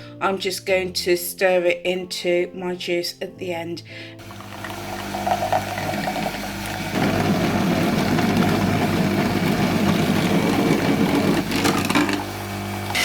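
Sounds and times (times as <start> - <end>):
electric juicer motor humming: 4.2 - 13.0.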